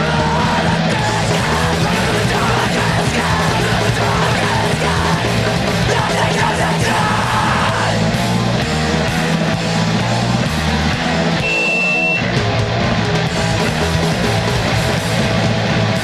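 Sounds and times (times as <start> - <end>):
shouted vocals: 0.0 - 8.6
punk band playing fast: 0.0 - 16.0.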